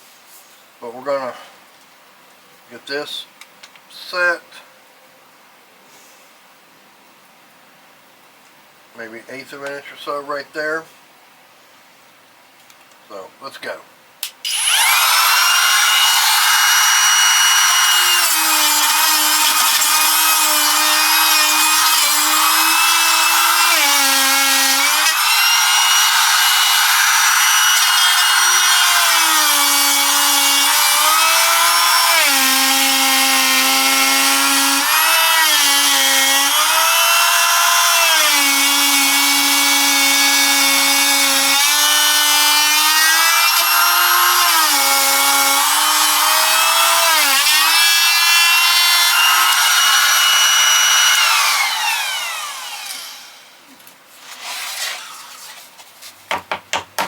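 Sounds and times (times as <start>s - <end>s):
electric router cutting: 14.4s - 53.6s.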